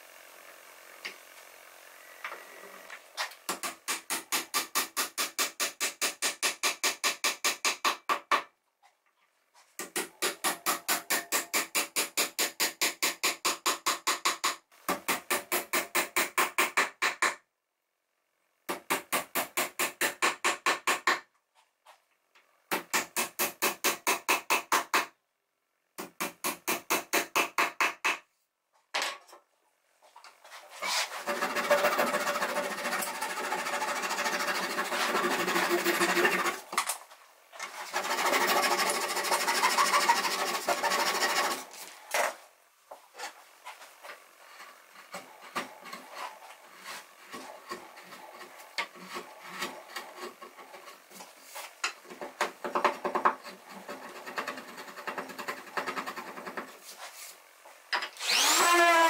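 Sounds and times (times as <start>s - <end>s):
hand tool strokes on wood: 30.4s - 36.7s, 37.6s - 42.1s, 58.2s - 59.0s.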